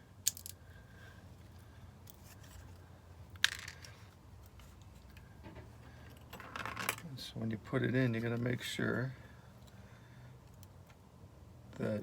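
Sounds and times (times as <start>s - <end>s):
small metallic clicks: 0.2s - 0.6s.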